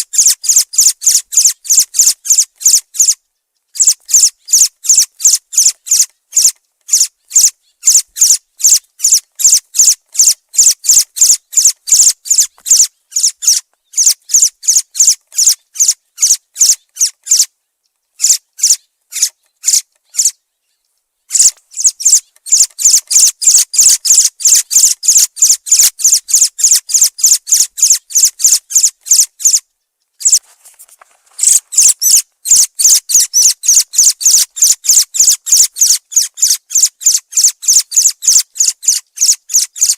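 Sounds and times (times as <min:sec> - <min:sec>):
thrush chirping: 0:03.8 - 0:17.5, 0:21.3 - 0:29.6, 0:30.2 - 0:30.7, 0:31.3 - 0:39.9.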